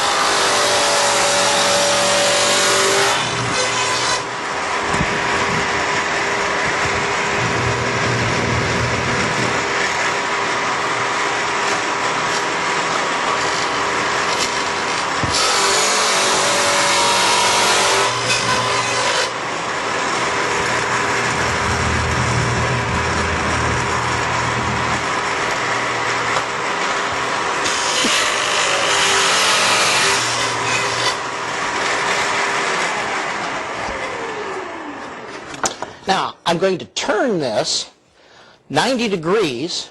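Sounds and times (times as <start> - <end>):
saw blade cutting wood: 0.0 - 4.3, 11.6 - 33.0
table saw motor whine: 0.0 - 35.5.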